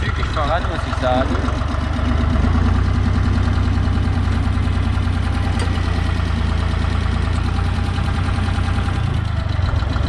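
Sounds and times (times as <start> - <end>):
tractor engine rumbling: 0.0 - 10.0.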